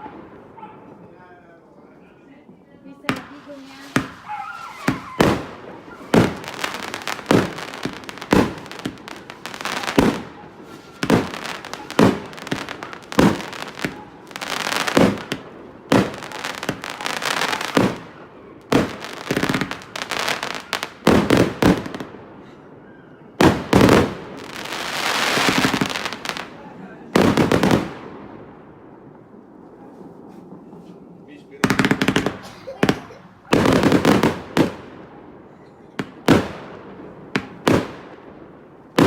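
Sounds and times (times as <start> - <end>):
firework bangs: 3.0 - 39.0
firework crackling bursts: 3.1 - 22.1, 23.4 - 28.0, 31.6 - 35.0.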